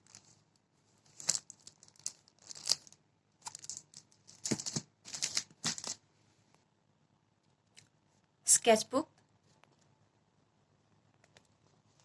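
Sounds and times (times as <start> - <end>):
packaging crinkling and tearing: 1.1 - 6.0.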